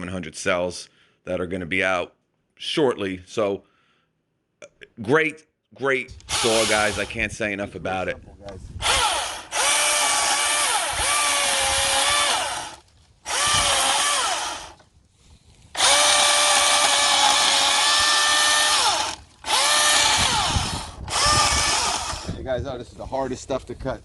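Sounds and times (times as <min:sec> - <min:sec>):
battery chainsaw motor whining: 0:06.1 - 0:07.3, 0:08.8 - 0:14.8, 0:15.7 - 0:22.4.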